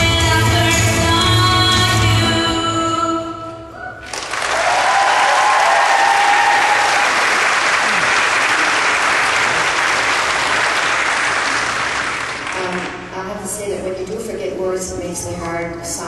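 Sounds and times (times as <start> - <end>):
person whooping: 3.8 - 8.8
audience applause: 4.1 - 13.0.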